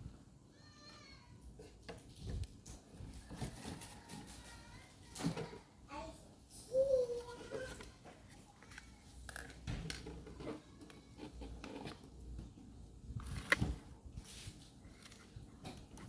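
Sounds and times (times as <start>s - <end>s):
handling clicks and scrapes: 8.6s - 12.6s.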